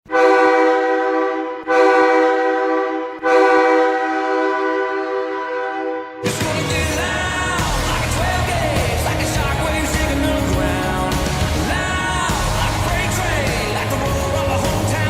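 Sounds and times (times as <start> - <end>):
goal horn blasts: 0.1 - 6.3
goal music: 6.2 - 15.0.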